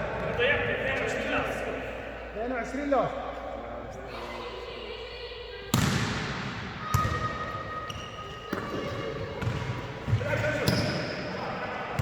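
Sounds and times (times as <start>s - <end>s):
volleyball hits on hard court: 5.7s - 7.4s.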